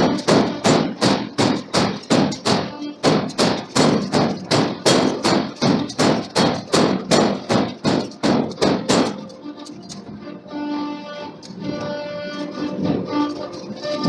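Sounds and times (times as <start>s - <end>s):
hammer blows on steel: 0.0s - 9.3s.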